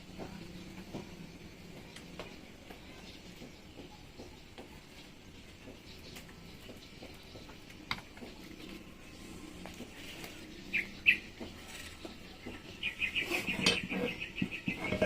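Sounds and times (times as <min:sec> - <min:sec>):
bird chirps: 0:09.9 - 0:15.0.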